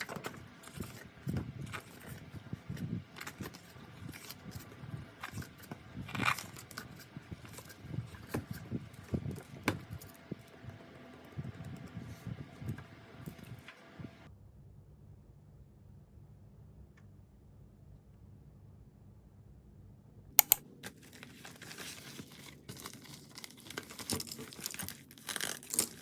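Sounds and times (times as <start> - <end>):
rustling scrapes: 0.0 - 10.7, 21.0 - 26.0
hands handling packaging: 0.0 - 13.8, 20.4 - 26.0.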